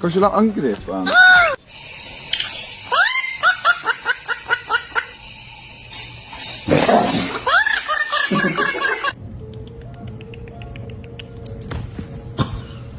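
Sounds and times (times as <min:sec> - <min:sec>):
talking bird imitating laughter: 0:02.9 - 0:05.2, 0:07.2 - 0:09.2.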